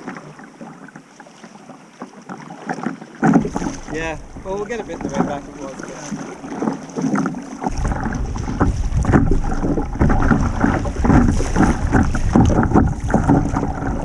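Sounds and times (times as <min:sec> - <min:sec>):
water splashing around kayak: 0:00.0 - 0:14.0
wind buffeting microphone: 0:03.4 - 0:06.6, 0:07.7 - 0:14.0.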